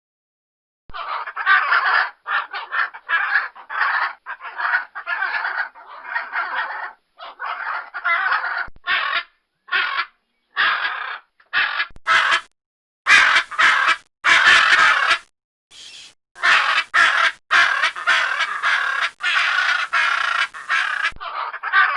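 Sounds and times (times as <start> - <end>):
macaw squawking: 1.0 - 12.5, 13.1 - 21.9.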